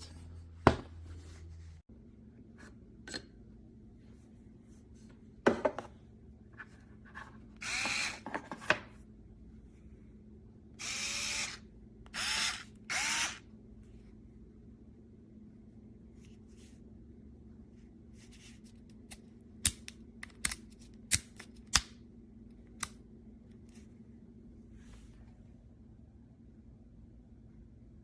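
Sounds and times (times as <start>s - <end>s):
electric screwdriver whirring: 7.6s - 8.2s, 10.8s - 13.4s.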